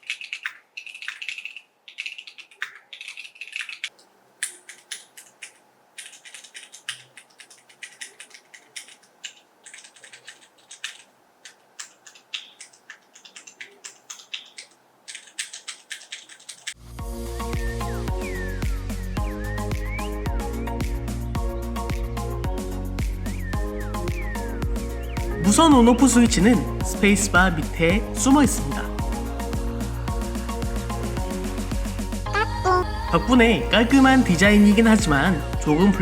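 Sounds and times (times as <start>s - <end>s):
mechanical keyboard typing: 0.0s - 16.8s
background music: 16.8s - 36.0s.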